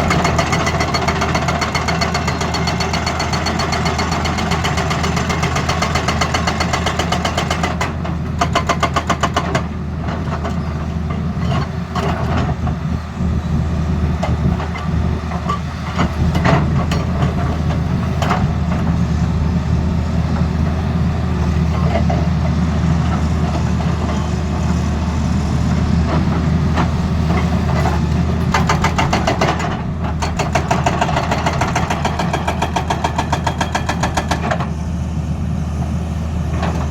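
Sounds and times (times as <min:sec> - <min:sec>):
excavator diesel engine running: 0:00.0 - 0:36.9
hydraulic breaker hammering: 0:28.5 - 0:34.5.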